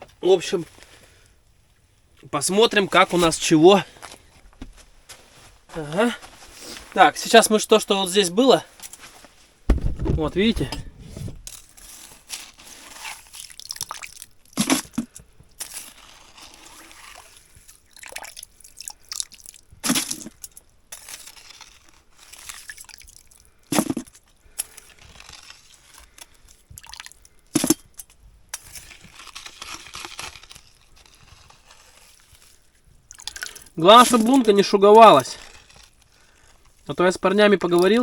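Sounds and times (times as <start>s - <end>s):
slushy ice crunching: 2.4s - 4.2s, 11.4s - 38.0s
sharp knocks: 9.7s - 10.9s.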